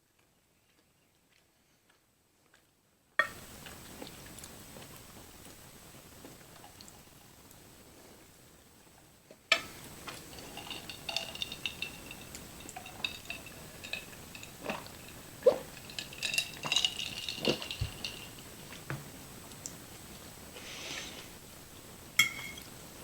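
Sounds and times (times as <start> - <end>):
cutlery clinking on plate: 9.5 - 18.4, 22.2 - 22.7.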